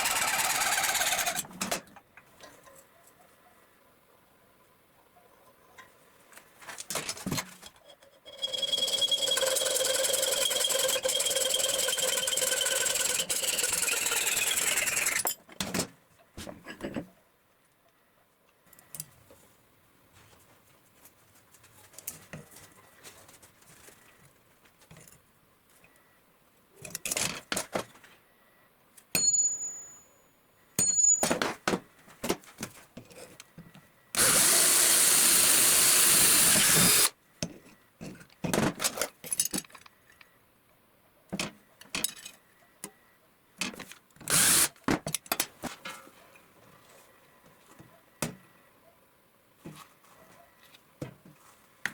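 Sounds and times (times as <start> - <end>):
power tool motor whining: 0.0 - 1.4, 8.9 - 15.3, 34.2 - 37.1, 44.3 - 44.7
tools and metal clicking: 7.5 - 15.7, 38.9 - 40.3, 41.8 - 42.4
hissing power tool: 34.2 - 37.1.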